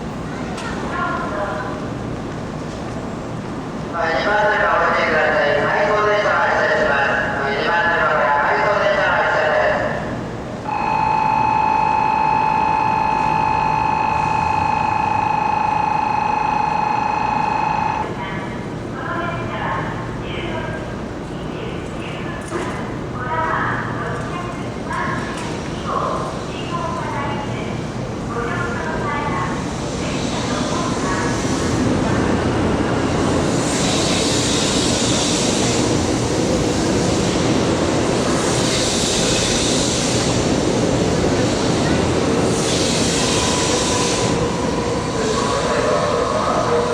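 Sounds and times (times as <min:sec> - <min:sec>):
train roaring at platform: 0:00.0 - 0:46.9
electronic departure bell ringing: 0:10.7 - 0:18.1.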